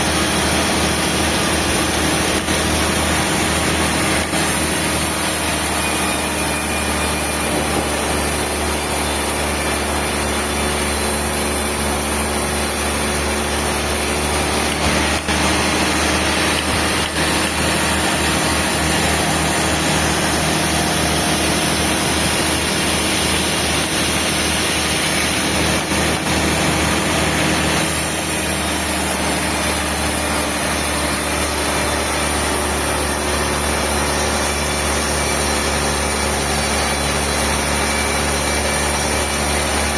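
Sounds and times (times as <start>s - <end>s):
sawmill machinery drone: 0.0s - 39.9s.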